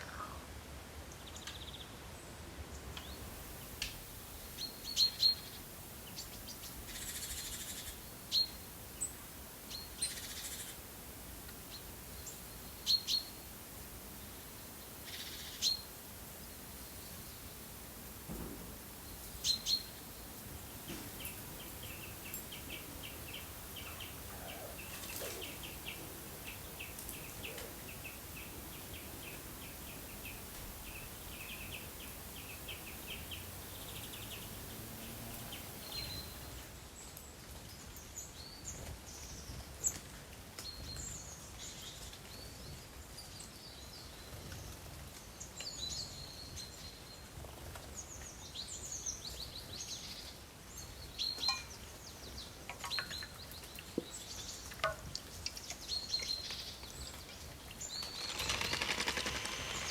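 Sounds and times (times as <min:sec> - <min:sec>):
steady background hiss: 0:00.0 - 0:59.9
small birds calling: 0:03.0 - 0:17.8, 0:19.0 - 0:36.7, 0:48.9 - 0:59.9
sharp clicks: 0:57.9 - 0:59.9.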